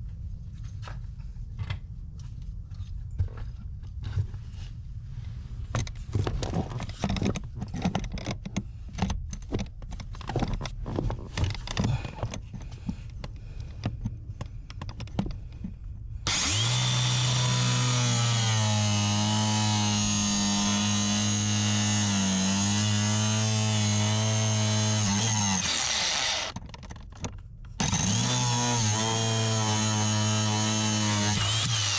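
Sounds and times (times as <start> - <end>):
power tool running: 16.3 - 26.6, 27.8 - 31.9
hand tools clicking and scraping: 16.3 - 31.9.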